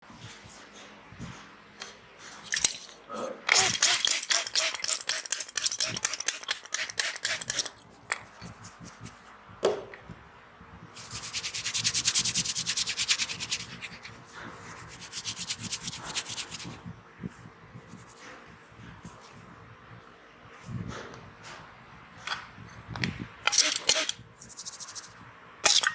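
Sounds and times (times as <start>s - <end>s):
hands rubbing hair and scalp: 3.8s - 9.3s, 11.0s - 16.8s, 24.4s - 25.2s.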